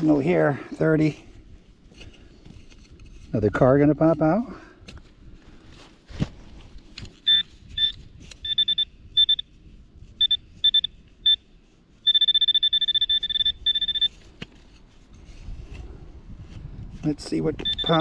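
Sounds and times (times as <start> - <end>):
metal detector beeping: 7.1 - 14.3, 17.6 - 18.0.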